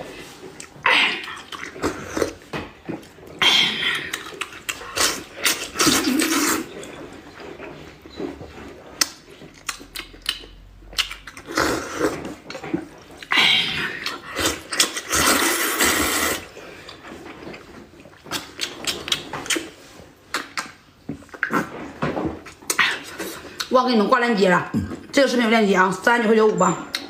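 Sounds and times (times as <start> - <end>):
loud slurp: 3.4 - 7.1, 13.3 - 16.7
person eating clicks and smacks: 4.0 - 6.2, 9.0 - 11.5, 18.0 - 19.7, 20.3 - 21.6.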